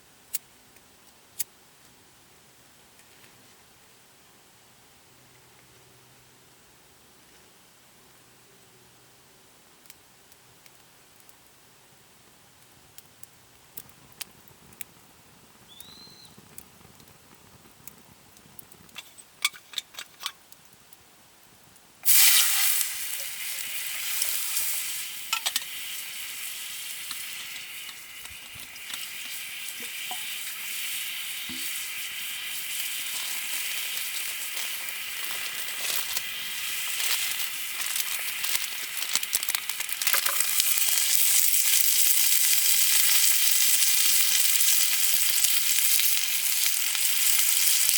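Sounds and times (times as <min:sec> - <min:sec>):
food sizzling in hot pan: 0:22.0 - 0:47.9.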